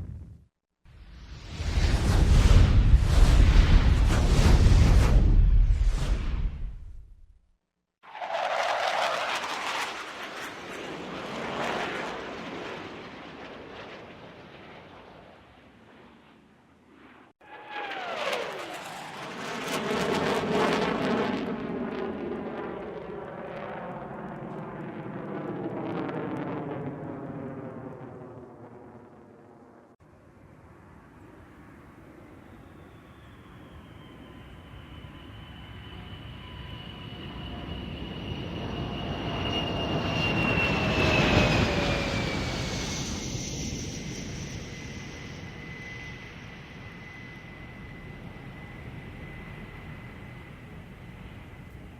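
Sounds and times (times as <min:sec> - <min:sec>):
airplane engine drone: 0:08.1 - 0:15.0, 0:17.1 - 0:21.4, 0:29.8 - 0:51.9.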